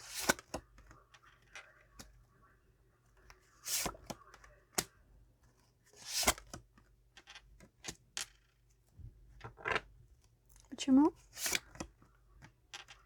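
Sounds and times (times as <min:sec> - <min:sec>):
cards sliding swishes: 0:00.0 - 0:00.6, 0:03.6 - 0:04.2, 0:06.0 - 0:06.5, 0:11.3 - 0:11.8.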